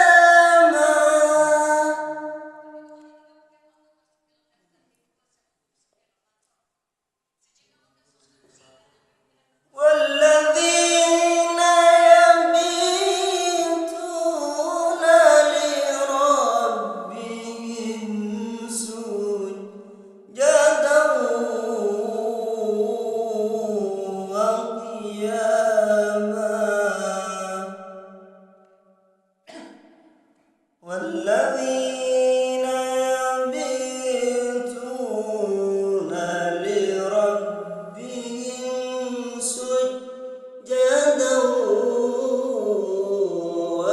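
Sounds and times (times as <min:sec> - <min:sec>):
person chanting melodically: 0:00.0 - 0:03.8, 0:09.8 - 0:27.9, 0:30.8 - 0:43.9.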